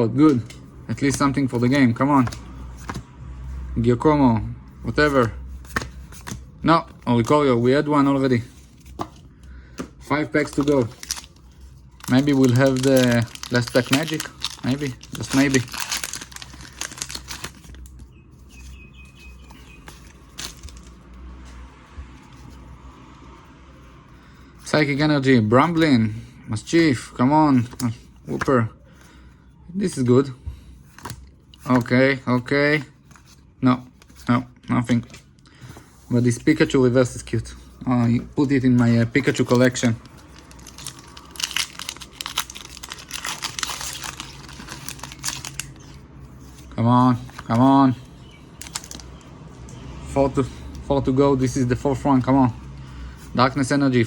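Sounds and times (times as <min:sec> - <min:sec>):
cards rustling: 0:00.2 - 0:03.7, 0:04.7 - 0:22.8, 0:23.8 - 0:49.8
foil pack crinkling and tearing: 0:10.3 - 0:18.0, 0:19.5 - 0:21.0, 0:39.0 - 0:46.0, 0:48.6 - 0:49.2.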